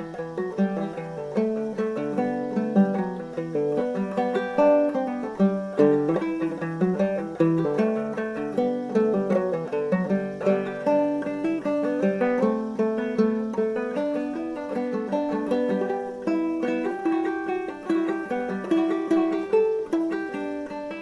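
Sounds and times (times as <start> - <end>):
fingerpicked acoustic guitar: 0.0 - 21.0.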